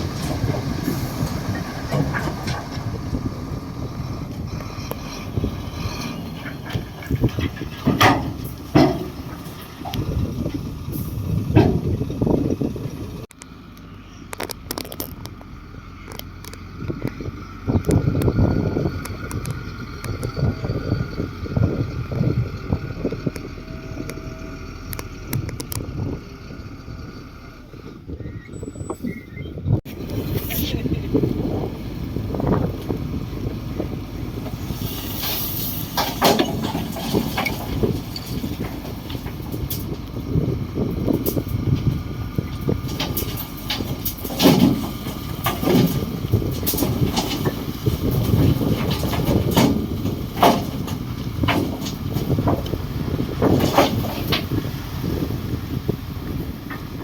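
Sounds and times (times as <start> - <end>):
metallic clanks and squeals: 0.0 - 3.1, 4.0 - 12.1, 18.8 - 25.9, 28.1 - 30.8, 34.4 - 54.6
bulldozer engine running: 0.0 - 57.0.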